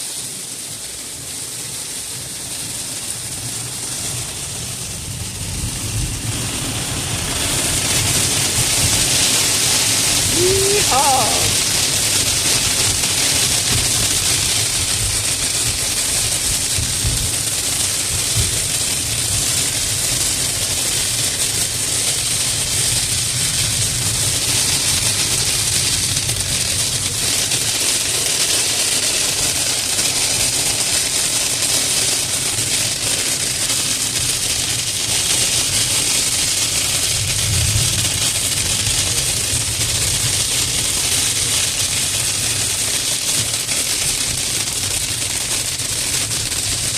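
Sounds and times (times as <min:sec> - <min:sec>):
rain and hail on car roof: 0:00.0 - 0:46.9.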